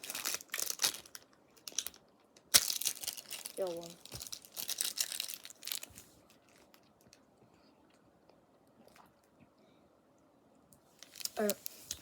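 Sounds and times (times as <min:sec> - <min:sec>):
plastic pouch crinkling: 0:00.0 - 0:06.8, 0:11.0 - 0:12.0.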